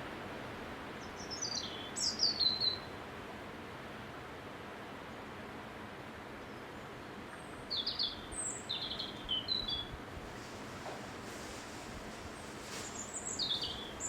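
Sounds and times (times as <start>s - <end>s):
bird chirping: 1.0s - 2.9s, 7.7s - 9.9s, 12.7s - 14.0s.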